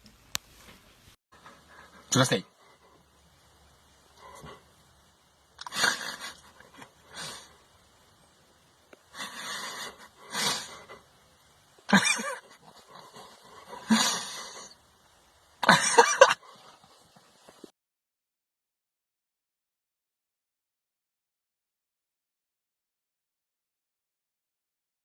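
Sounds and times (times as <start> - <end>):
dog huffing: 9.2 - 11.1.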